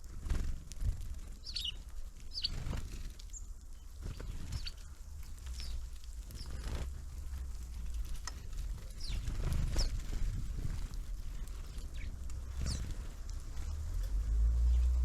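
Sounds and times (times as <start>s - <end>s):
small birds calling: 0.0s - 15.0s
low rumble: 4.1s - 15.0s.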